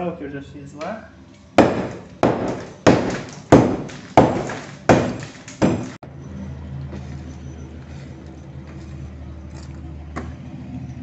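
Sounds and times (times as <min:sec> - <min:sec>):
heavy ringing thuds: 0:01.6 - 0:06.0.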